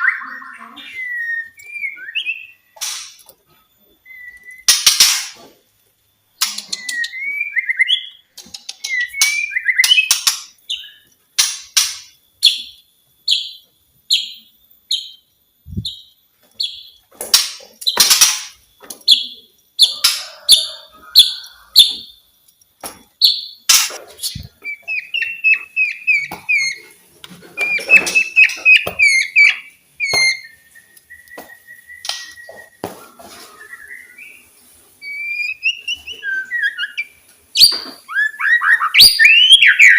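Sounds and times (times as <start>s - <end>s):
bird singing whistled notes: 0.0s - 2.7s, 4.0s - 4.7s, 6.6s - 11.1s, 24.4s - 26.8s, 27.6s - 39.9s.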